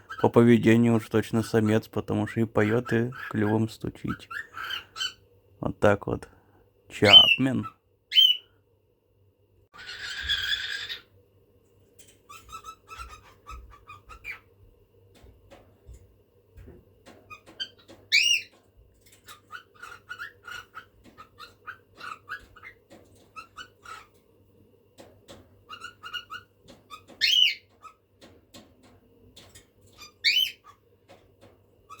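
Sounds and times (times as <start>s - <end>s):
cockatiel chirps: 8.1s - 8.5s, 9.8s - 11.1s, 17.3s - 18.6s, 19.3s - 24.1s, 25.7s - 28.0s, 30.0s - 30.8s.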